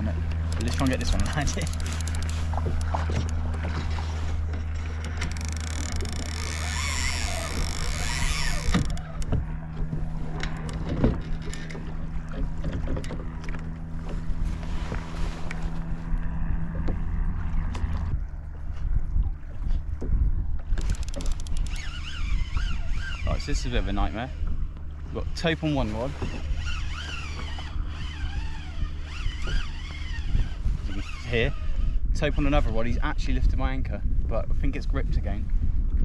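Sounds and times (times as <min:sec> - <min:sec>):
steady low hum: 0:00.0 - 0:36.0
fishing reel clicks and knocks: 0:00.3 - 0:03.4, 0:05.0 - 0:09.6, 0:20.7 - 0:23.4.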